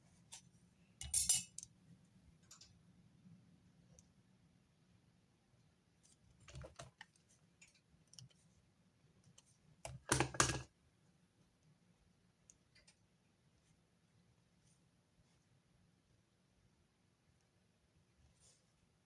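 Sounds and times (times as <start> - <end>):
pens clicking and tapping on desk: 9.8 - 10.7
stationery clattering: 9.9 - 10.7.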